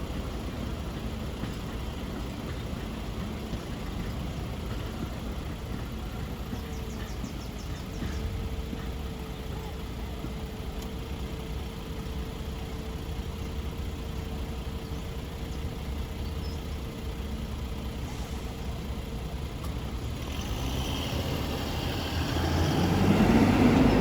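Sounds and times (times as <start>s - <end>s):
engine idling: 0.0s - 24.0s
approaching vehicle noise: 10.8s - 24.0s.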